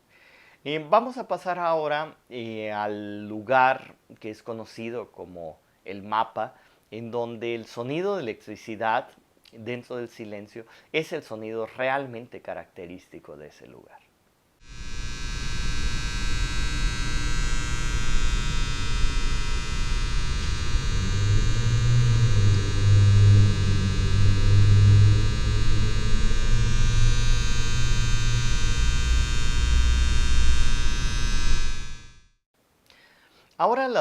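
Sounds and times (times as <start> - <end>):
low electrical hum: 14.0 - 34.0
high whine: 14.6 - 32.4.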